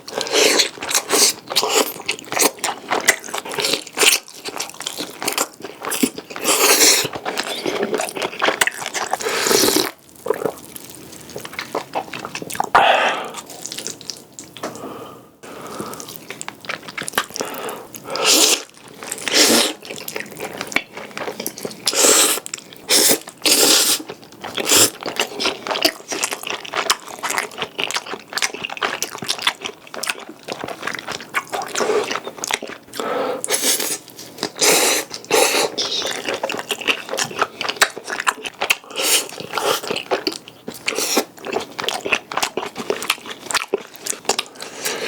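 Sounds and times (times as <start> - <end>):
wet chewing and mouth sounds: 0.0 - 14.8, 15.4 - 45.0.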